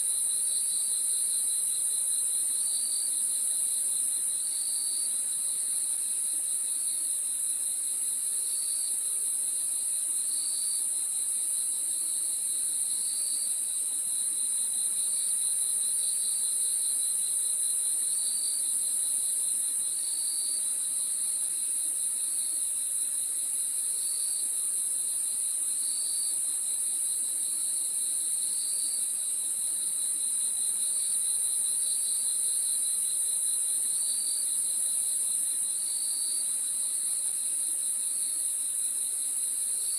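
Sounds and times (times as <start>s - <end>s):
high-pitched cricket chorus: 0.0s - 39.9s
lower cricket chirps: 0.0s - 39.9s.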